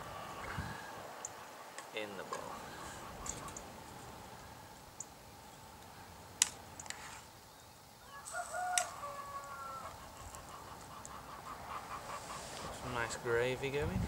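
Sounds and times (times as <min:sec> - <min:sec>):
animal or bird call: 0:07.0 - 0:13.2.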